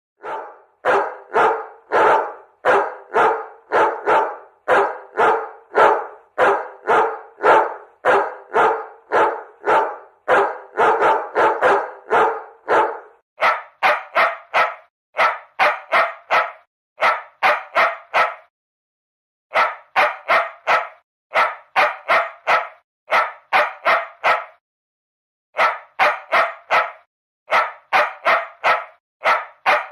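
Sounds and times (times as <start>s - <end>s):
dog barking: 0.2s - 18.5s, 19.5s - 24.6s, 25.6s - 29.9s
puppy yapping: 0.2s - 18.5s, 19.5s - 24.6s, 25.6s - 29.9s.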